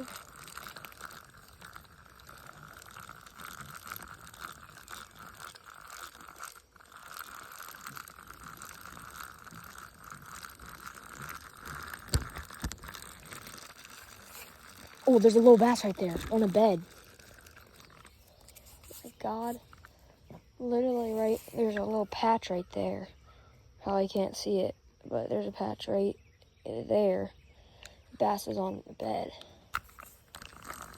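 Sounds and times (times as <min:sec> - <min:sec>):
fishing reel whirring: 0:00.0 - 0:20.1, 0:20.7 - 0:22.9, 0:29.7 - 0:30.9.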